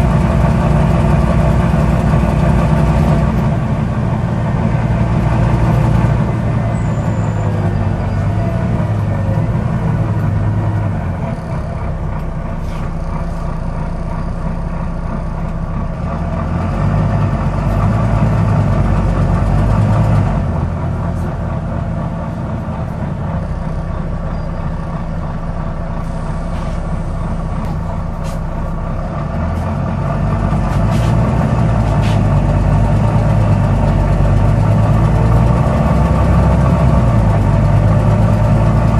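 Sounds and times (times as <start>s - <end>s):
bus diesel engine running: 0.0s - 38.9s
sharp clicks from bus: 26.5s - 28.7s, 30.5s - 35.0s.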